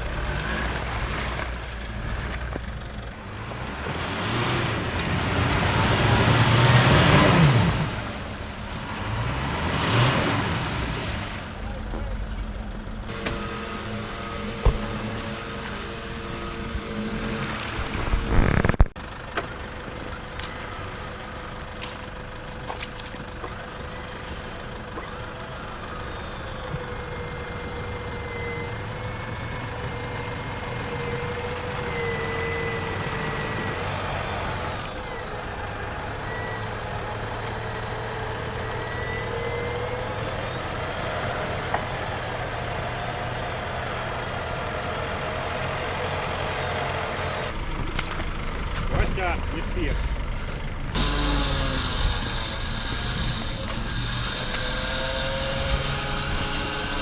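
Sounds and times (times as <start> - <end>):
off-road vehicle whining: 0.0 - 57.0
loud burst of noise: 51.0 - 57.0.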